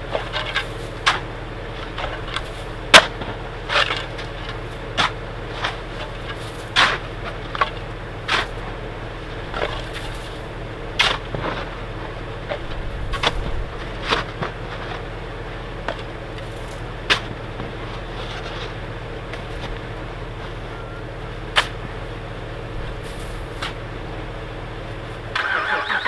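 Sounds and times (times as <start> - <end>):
low mechanical hum: 0.0 - 26.0
short knocks and crunches: 0.1 - 15.2, 15.8 - 20.6.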